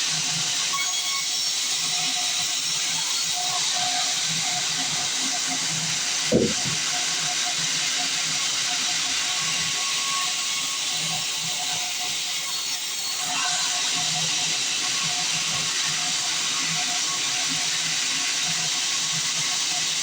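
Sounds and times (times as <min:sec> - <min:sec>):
short low thump: 0:06.3 - 0:06.8
band saw cutting log: 0:06.3 - 0:07.1.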